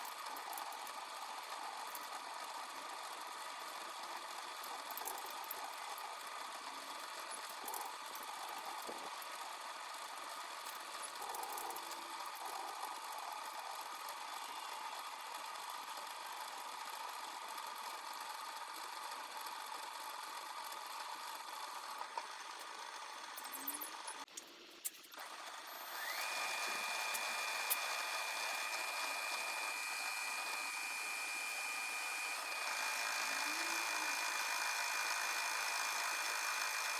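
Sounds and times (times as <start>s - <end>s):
metal lathe whirring: 25.2s - 36.9s.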